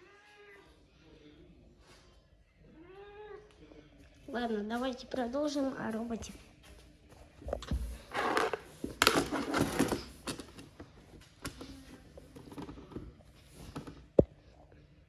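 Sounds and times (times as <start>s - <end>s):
rustling and scraping: 4.8s - 14.7s.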